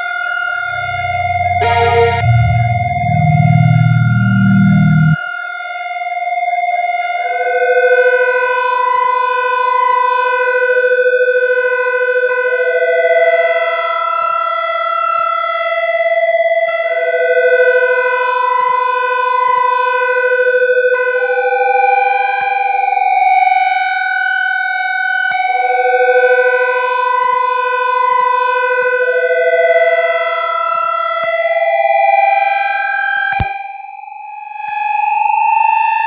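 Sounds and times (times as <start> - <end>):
synthesizer ambient drone: 0.6 - 5.2.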